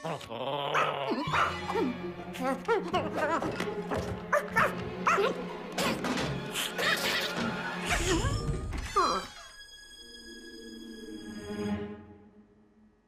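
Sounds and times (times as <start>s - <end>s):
cartoon dog yelps and barks: 0.7s - 1.6s.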